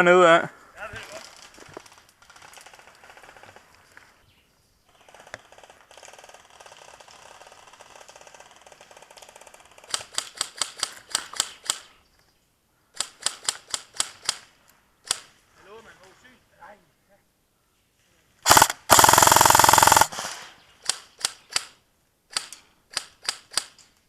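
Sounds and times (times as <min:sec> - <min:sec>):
fast mechanical clicking: 0:18.5 - 0:20.2
airsoft rifle shots: 0:18.5 - 0:20.4.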